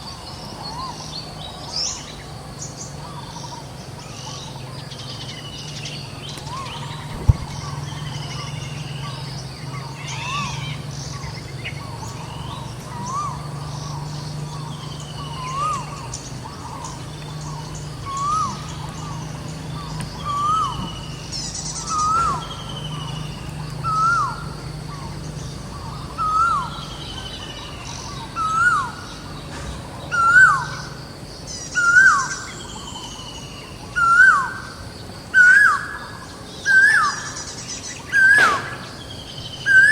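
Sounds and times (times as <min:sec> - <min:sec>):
low steady hum: 0:00.0 - 0:35.4
falling bird whistles: 0:06.6 - 0:08.6, 0:21.8 - 0:22.8, 0:38.1 - 0:39.9.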